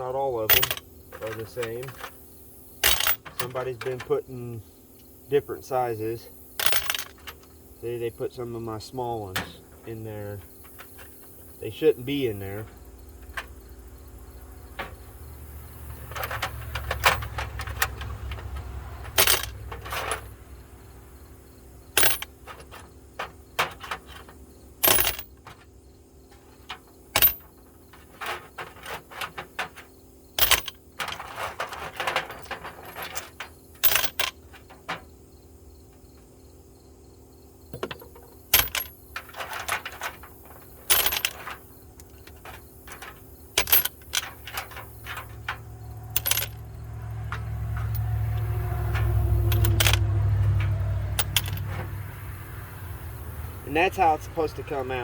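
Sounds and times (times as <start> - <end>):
metal sockets clinking: 0.4 - 2.2, 2.8 - 4.2, 6.6 - 7.5, 9.3 - 13.5, 15.8 - 20.4, 21.9 - 25.7, 26.3 - 35.0, 37.7 - 52.0.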